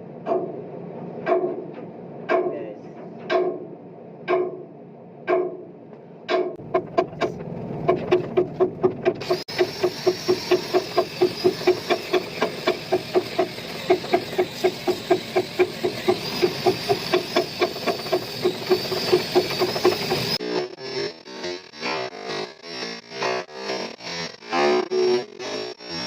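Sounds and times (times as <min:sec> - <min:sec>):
angle grinder with wire brush: 0:09.2 - 0:26.0.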